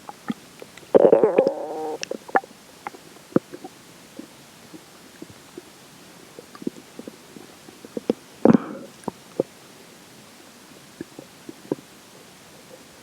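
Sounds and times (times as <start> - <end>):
stomach gurgling: 0.0 - 5.7, 6.4 - 9.5, 10.9 - 11.9.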